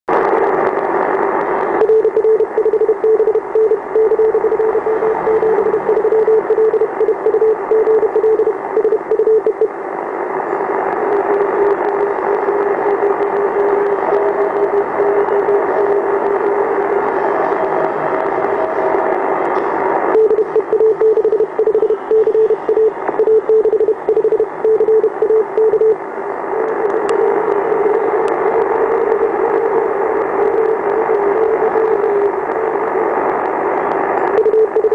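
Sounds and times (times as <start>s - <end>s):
harsh radio hiss: 0.1s - 34.9s
pulsing interference buzz: 0.1s - 34.9s.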